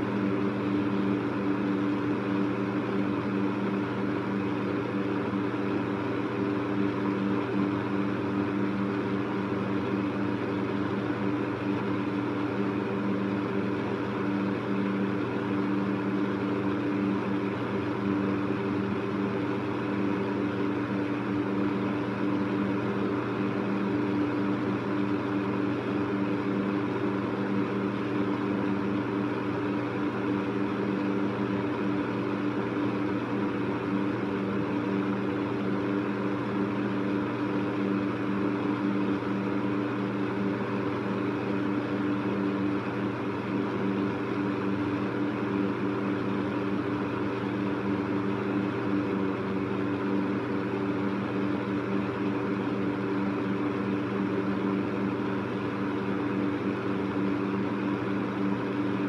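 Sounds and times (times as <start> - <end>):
electric fan running: 0.0 - 59.0.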